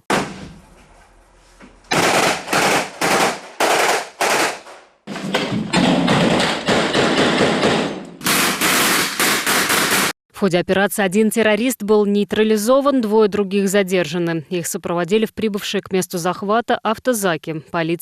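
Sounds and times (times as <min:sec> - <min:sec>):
automatic gunfire bursts: 0:01.9 - 0:04.7.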